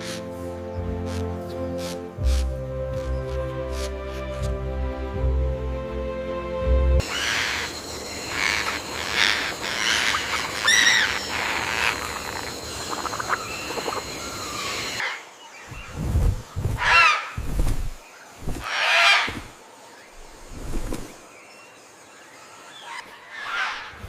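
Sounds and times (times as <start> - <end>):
music: 0.0 - 7.0
bird calls: 7.0 - 24.0.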